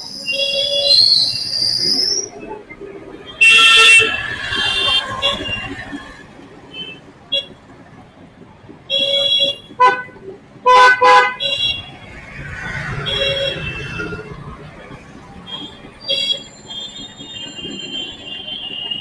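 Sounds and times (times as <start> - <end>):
traffic noise: 0.0 - 19.0
vehicle horns honking: 3.3 - 5.8, 8.9 - 12.0, 13.0 - 14.4, 15.5 - 19.0.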